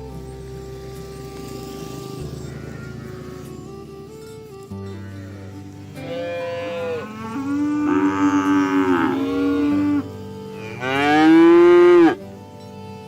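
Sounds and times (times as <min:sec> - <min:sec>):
cattle mooing: 0:01.9 - 0:04.2, 0:04.8 - 0:12.2.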